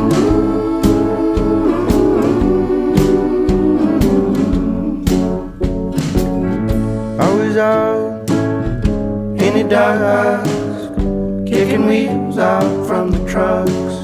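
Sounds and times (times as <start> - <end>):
person singing: 0.0 - 5.5, 7.2 - 8.5, 9.4 - 14.0
country song with guitar: 0.0 - 14.0
steady drum beat: 0.0 - 14.0.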